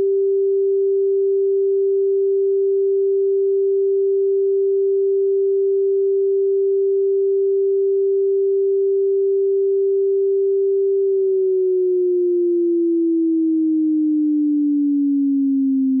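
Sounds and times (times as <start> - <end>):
siren tone sliding down: 11.1 - 16.0.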